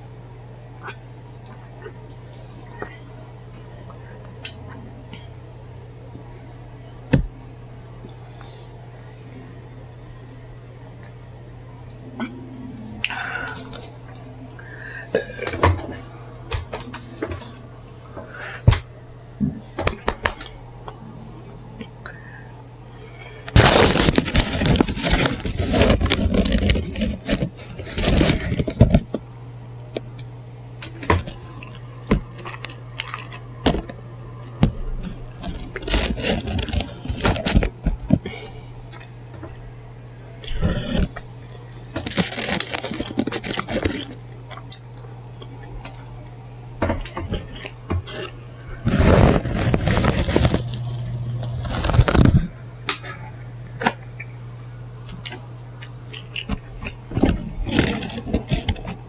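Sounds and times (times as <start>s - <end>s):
steady low hum: 0.0s - 59.0s
paper wrapping crinkling: 23.5s - 29.1s, 30.9s - 39.1s, 41.9s - 44.2s, 47.3s - 52.6s, 56.1s - 59.0s.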